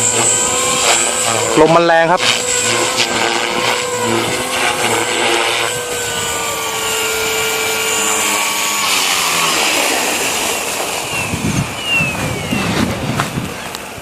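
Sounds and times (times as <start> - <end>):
model helicopter whine: 0.0 - 14.0
wind noise: 2.2 - 14.0.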